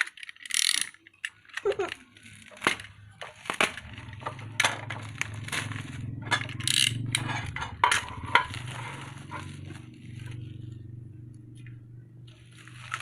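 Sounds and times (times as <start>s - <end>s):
sharp clicks and metallic clinks: 0.0s - 2.0s, 6.2s - 10.4s
packaging rustle: 1.3s - 7.0s, 8.1s - 10.8s, 12.3s - 13.0s.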